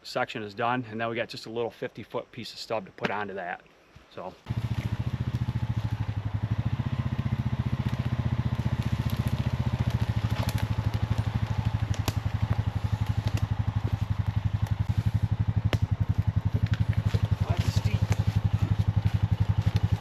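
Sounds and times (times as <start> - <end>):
atv engine chugging: 4.5 - 20.0
sharp cracks: 7.0 - 20.0.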